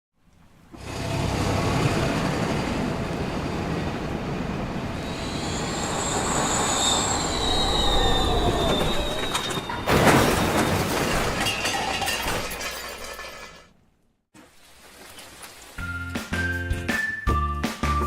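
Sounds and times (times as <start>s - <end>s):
high squeals: 5.0s - 10.7s
loud crash: 5.7s - 13.6s.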